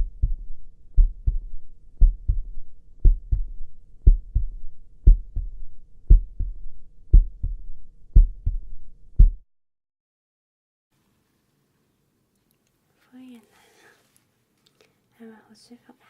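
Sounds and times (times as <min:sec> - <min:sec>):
heartbeat double thump: 0:00.0 - 0:09.4.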